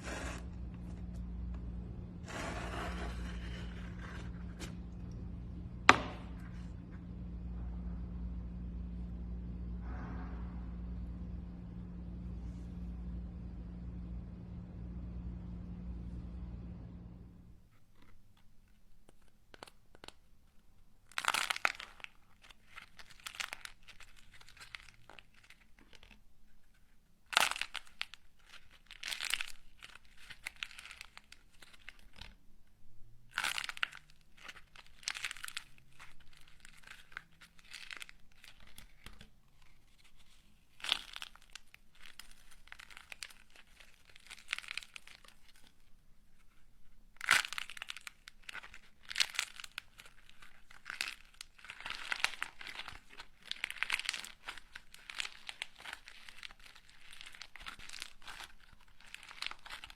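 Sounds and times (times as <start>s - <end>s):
crinkling and tearing: 17.7s - 32.5s, 33.3s - 59.9s.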